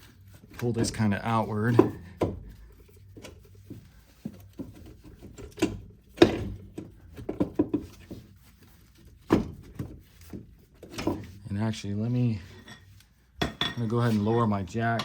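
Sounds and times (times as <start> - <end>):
metal knocks and clunks: 4.6 - 8.2.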